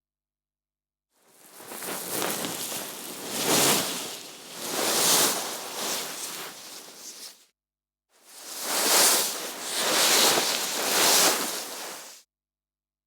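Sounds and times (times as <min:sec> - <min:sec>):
cloth rustling: 0:01.4 - 0:07.4, 0:08.4 - 0:12.2.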